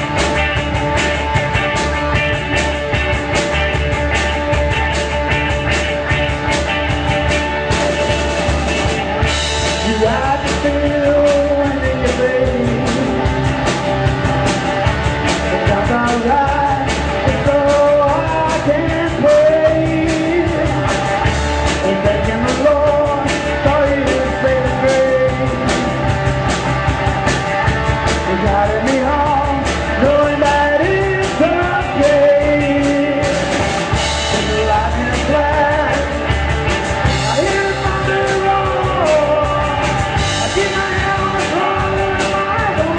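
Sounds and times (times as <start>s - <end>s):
rock band playing: 0.0s - 42.9s
steady drum beat: 0.0s - 42.9s
person singing: 9.7s - 13.6s, 15.4s - 21.1s, 21.7s - 26.0s, 28.1s - 36.5s, 37.1s - 42.9s.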